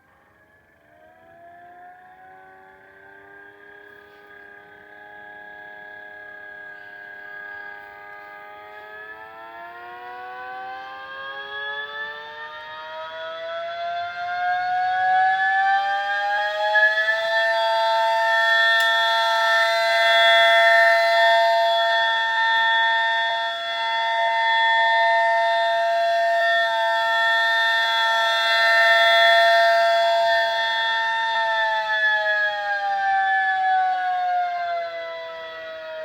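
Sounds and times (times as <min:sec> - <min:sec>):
siren winding up: 0:16.6 - 0:23.4.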